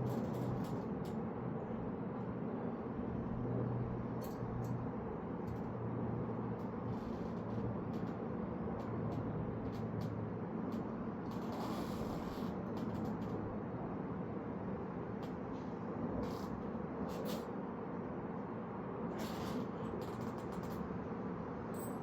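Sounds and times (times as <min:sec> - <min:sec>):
steady background hum: 0:00.0 - 0:22.0.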